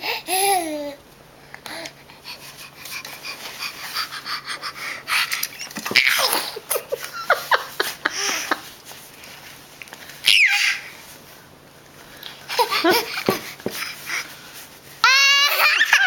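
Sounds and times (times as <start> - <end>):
breathy puffs of air: 1.4 - 5.5.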